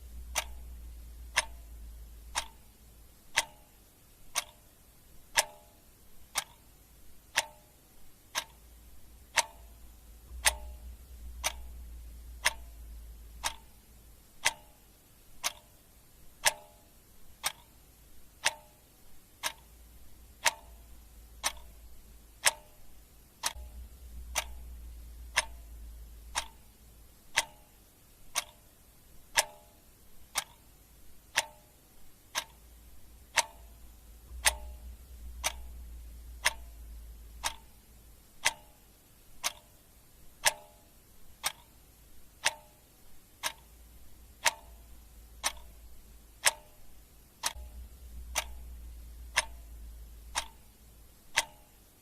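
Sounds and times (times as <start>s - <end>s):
clock ticking: 0.0s - 52.0s.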